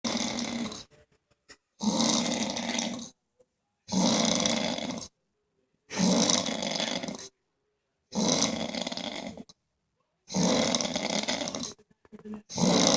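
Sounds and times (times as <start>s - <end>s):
person snoring: 0.0s - 0.9s, 1.8s - 3.1s, 3.9s - 5.1s, 5.9s - 7.3s, 8.1s - 9.5s, 10.3s - 11.8s, 12.5s - 12.9s.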